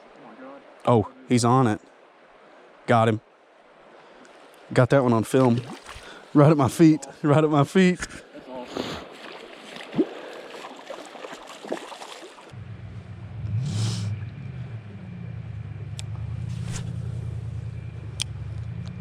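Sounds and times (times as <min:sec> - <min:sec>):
running water: 0:00.0 - 0:12.6
low engine hum: 0:12.5 - 0:19.0.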